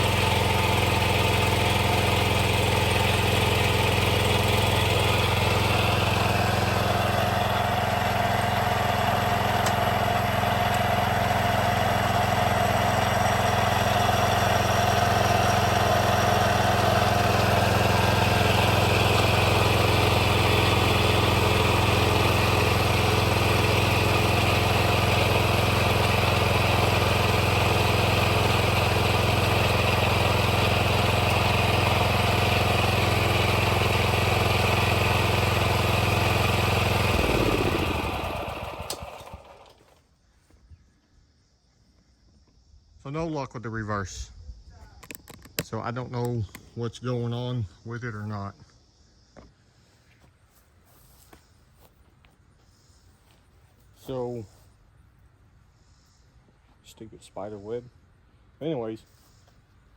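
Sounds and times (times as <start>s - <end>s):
lawn mower engine running: 0.0s - 40.0s.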